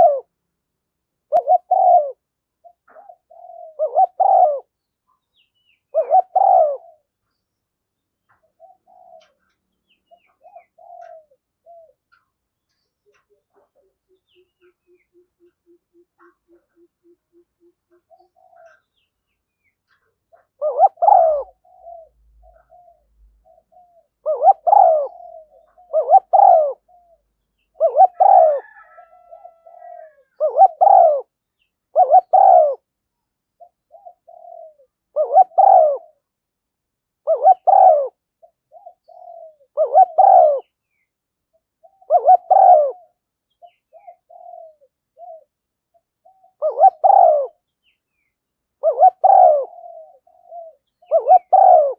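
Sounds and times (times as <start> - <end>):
dove cooing: 0.0 - 0.4, 1.2 - 7.3, 8.2 - 19.0, 19.8 - 32.9, 33.5 - 36.3, 37.2 - 40.8, 41.5 - 47.7, 48.8 - 51.9.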